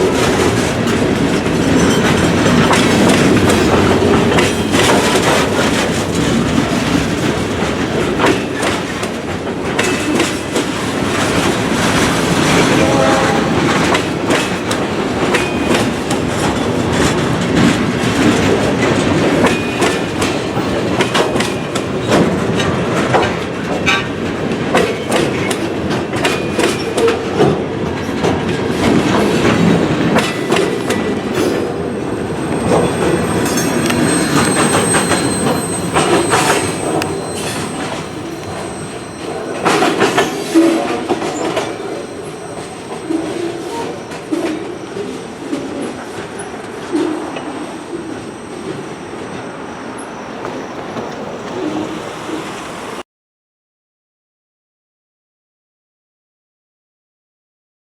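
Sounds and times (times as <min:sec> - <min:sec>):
train wheels clattering over rail joints: 0:00.0 - 0:48.8
high-pitched wheel squeal: 0:31.8 - 0:44.1.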